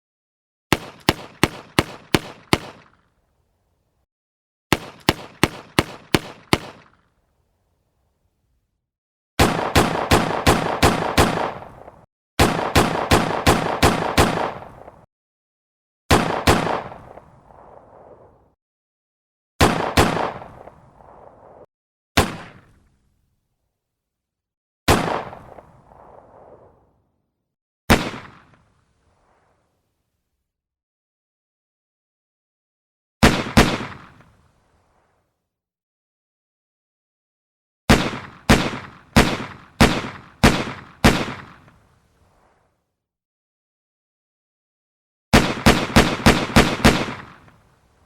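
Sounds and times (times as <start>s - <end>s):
pistol shots: 0.7s - 3.0s, 4.7s - 7.0s, 9.4s - 15.1s, 16.1s - 17.2s, 19.6s - 20.8s, 22.2s - 22.7s, 24.9s - 25.6s, 37.9s - 41.7s, 45.4s - 47.6s.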